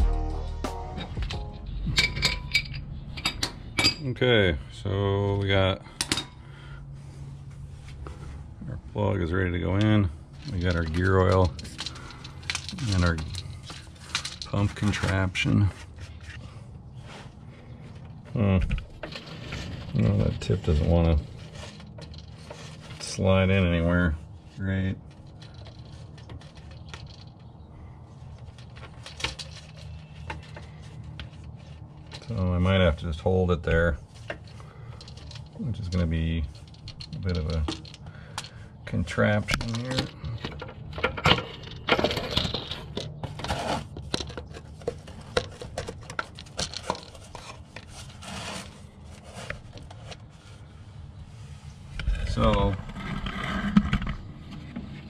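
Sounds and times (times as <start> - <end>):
low steady hum: 0.0 - 55.0
plastic rustling and crinkling: 39.0 - 55.0.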